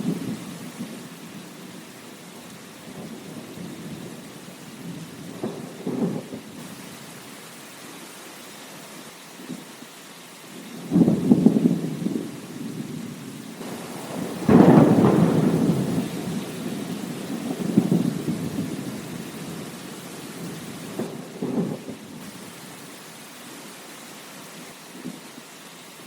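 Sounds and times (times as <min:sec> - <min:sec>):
thunder rumbling: 0:00.0 - 0:01.9, 0:02.5 - 0:06.9, 0:10.7 - 0:22.6
steady rain: 0:00.0 - 0:26.0.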